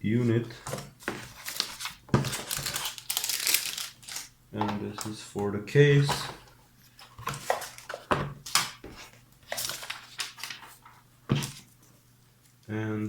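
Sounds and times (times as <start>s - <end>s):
crinkling plastic packaging: 1.4s - 4.4s.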